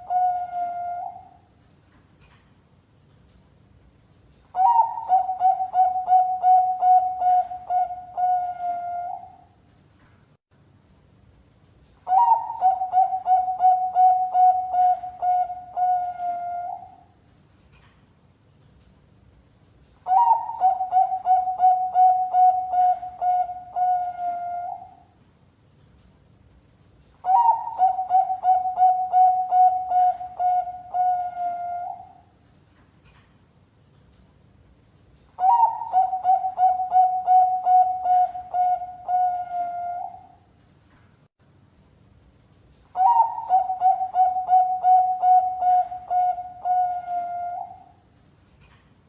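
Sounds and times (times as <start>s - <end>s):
dove cooing: 0.0s - 1.5s, 4.6s - 9.5s, 12.1s - 17.2s, 20.1s - 25.1s, 27.2s - 32.3s, 35.4s - 40.4s, 43.0s - 48.0s.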